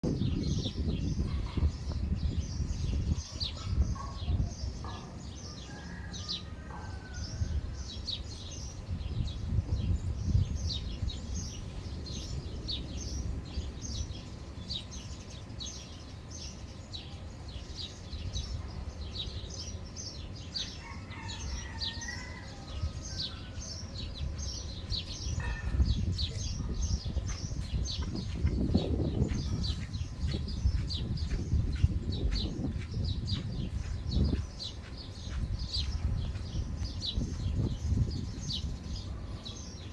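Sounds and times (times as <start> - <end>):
small birds chirping: 0.0 - 39.9
lower bird calls: 16.6 - 39.9
steady low rumble: 23.9 - 39.9.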